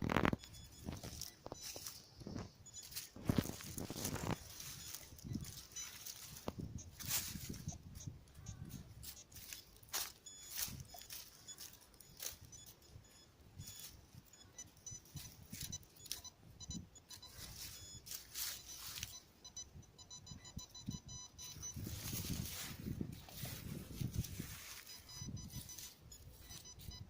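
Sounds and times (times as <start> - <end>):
metal detector beeps: 0.0 - 27.0
rustling of leaf litter: 2.8 - 7.6, 21.8 - 25.1.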